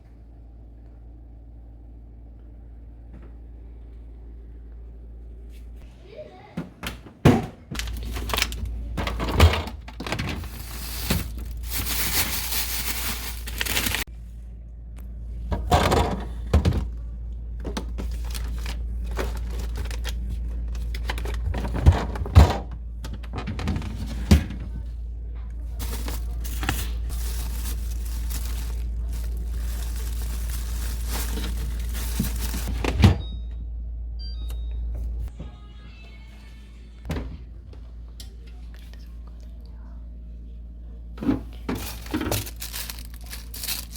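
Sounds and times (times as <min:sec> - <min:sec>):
steady low hum: 0:00.0 - 0:06.1, 0:07.5 - 0:43.9
rustling: 0:10.3 - 0:14.1, 0:25.8 - 0:32.7, 0:41.8 - 0:43.9.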